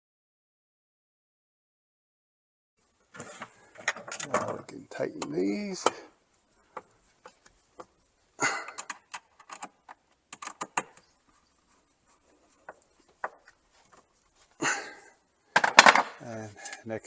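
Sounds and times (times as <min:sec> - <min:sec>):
clicks and knocks of tools: 0:08.6 - 0:11.1.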